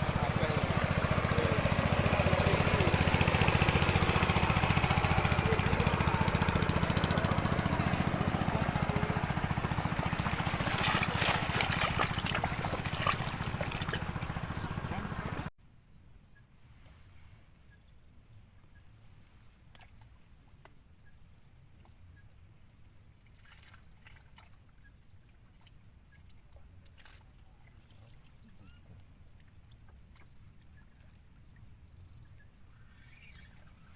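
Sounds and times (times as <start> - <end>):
small engine running: 0.0 - 15.5, 32.7 - 33.9.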